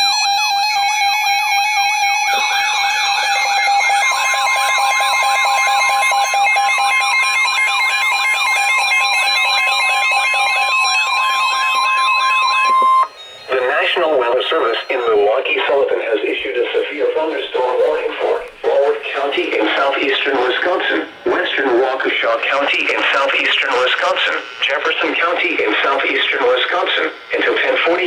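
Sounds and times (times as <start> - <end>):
repeating siren-like pitch sweeps: 0.0 - 21.9
steady high alarm tone: 0.0 - 28.0.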